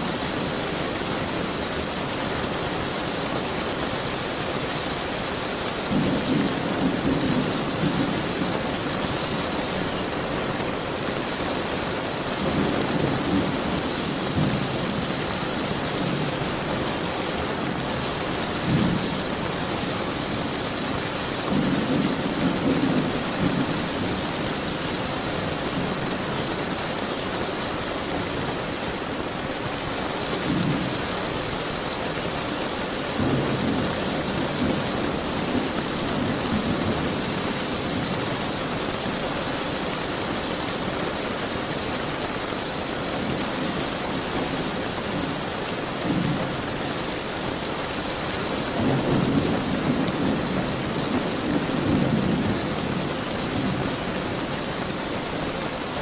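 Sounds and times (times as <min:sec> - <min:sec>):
steady rain: 0:00.0 - 0:56.0
thunder rumbling: 0:12.3 - 0:26.4.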